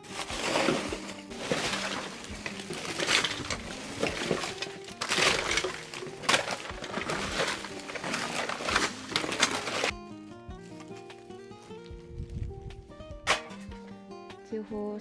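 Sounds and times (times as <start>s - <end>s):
shovel scraping dry dirt: 0.0s - 10.0s
faint background music: 0.0s - 15.0s.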